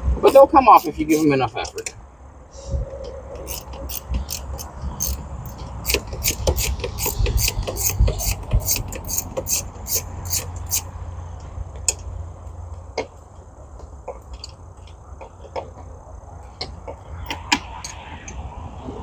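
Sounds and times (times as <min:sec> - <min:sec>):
ratchet wrench clicking: 0:00.3 - 0:01.9, 0:03.4 - 0:11.0
tool scraping and knocking on metal: 0:00.3 - 0:01.9, 0:03.4 - 0:10.9.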